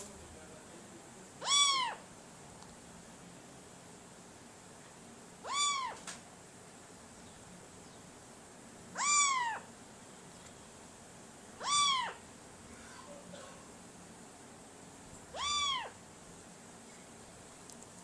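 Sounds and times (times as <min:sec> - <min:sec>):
cat meowing: 0:01.4 - 0:02.0, 0:05.4 - 0:06.1, 0:08.9 - 0:09.7, 0:11.6 - 0:12.2, 0:15.3 - 0:16.0.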